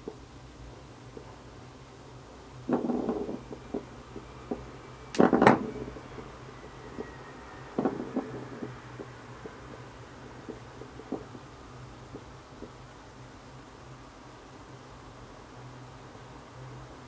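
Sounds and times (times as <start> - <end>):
ball rolling and knocking: 2.6 - 6.3, 7.7 - 11.5.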